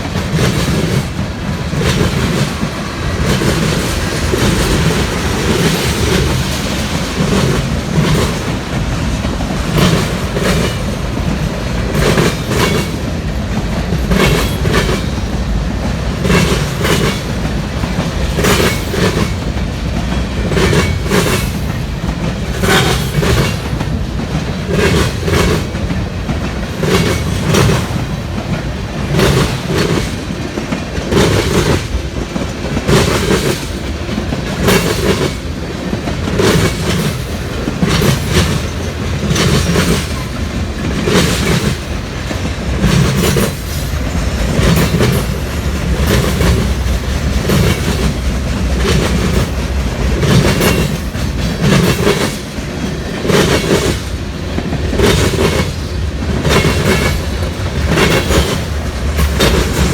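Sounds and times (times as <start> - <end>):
freight train rumbling past: 0.0 - 59.9
train wheels clacking over track: 0.0 - 59.9.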